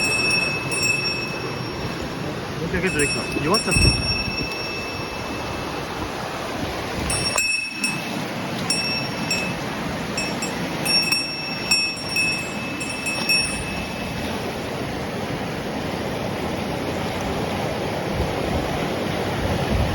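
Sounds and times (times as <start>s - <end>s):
small metal bell jingling: 0.0s - 5.8s, 7.1s - 14.5s
stream water rushing: 0.0s - 19.9s.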